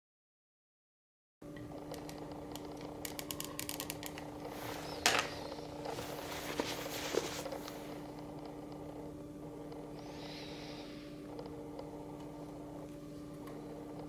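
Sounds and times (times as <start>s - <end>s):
low electrical hum: 1.4s - 14.0s
plastic parts clicking: 1.9s - 4.3s
rustling: 4.4s - 8.0s.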